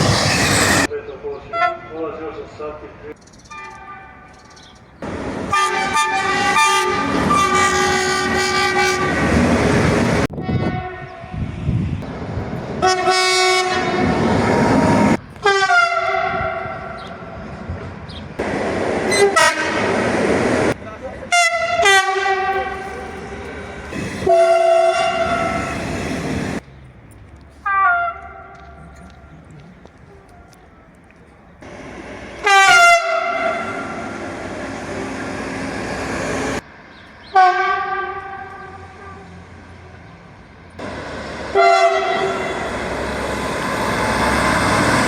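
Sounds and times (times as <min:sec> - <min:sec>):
rumble of trains rolling past: 0:00.0 - 0:45.0
train air horn blasts: 0:05.5 - 0:09.3, 0:10.3 - 0:11.5, 0:12.8 - 0:17.0, 0:19.1 - 0:20.1, 0:21.3 - 0:23.1, 0:23.9 - 0:26.5, 0:27.6 - 0:28.9, 0:31.6 - 0:35.3, 0:37.3 - 0:39.4, 0:41.5 - 0:42.8.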